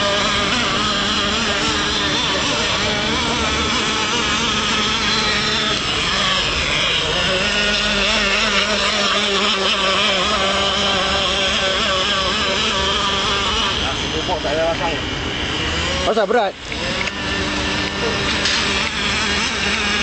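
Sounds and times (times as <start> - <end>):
model boat engine whining: 0.0 - 20.0.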